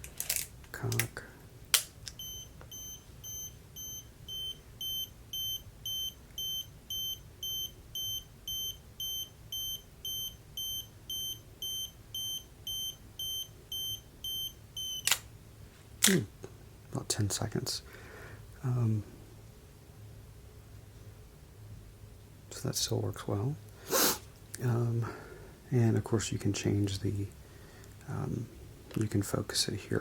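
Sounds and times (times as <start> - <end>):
self-timer beeping: 2.2 - 15.1
camera shutter click: 15.0 - 15.3.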